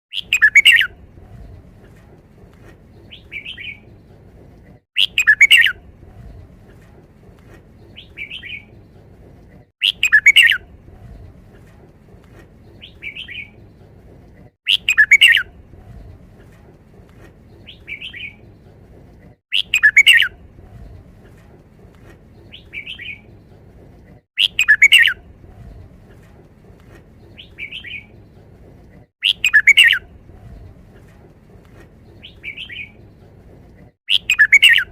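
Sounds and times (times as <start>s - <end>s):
bird song phrases: 0.1s - 1.7s, 3.0s - 4.1s, 5.0s - 6.4s, 7.8s - 8.9s, 12.6s - 13.8s, 14.7s - 16.2s, 19.5s - 20.9s, 24.4s - 25.7s, 27.2s - 28.4s, 29.2s - 30.7s, 32.0s - 33.1s, 34.1s - 34.9s
soft bird call: 0.1s - 2.0s, 5.0s - 6.3s, 9.8s - 10.7s, 14.7s - 16.0s, 19.5s - 20.4s, 24.4s - 25.3s, 29.2s - 30.6s, 34.1s - 34.9s.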